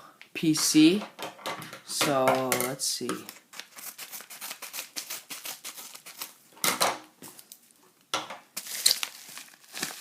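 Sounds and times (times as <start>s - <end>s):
packaging crinkling and clattering: 8.6s - 10.0s.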